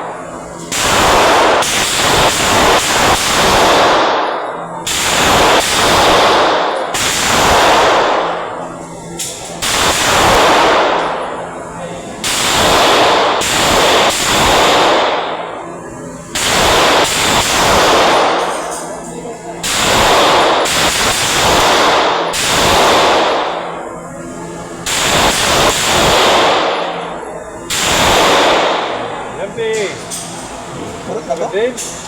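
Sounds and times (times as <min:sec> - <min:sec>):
echoing gunshots: 0:00.7 - 0:08.4, 0:09.6 - 0:11.2, 0:12.2 - 0:15.4, 0:16.4 - 0:18.4, 0:19.6 - 0:23.6, 0:24.9 - 0:26.9, 0:27.7 - 0:29.1.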